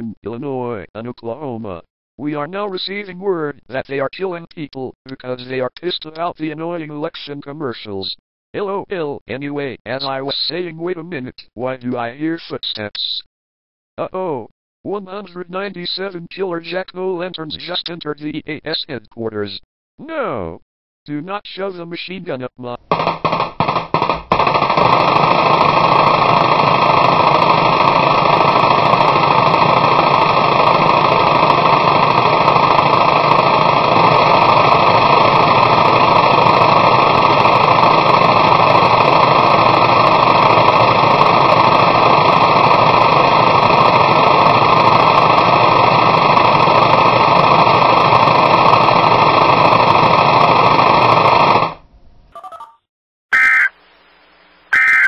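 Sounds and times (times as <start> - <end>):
loud steady rushing noise: 22.9 - 51.6.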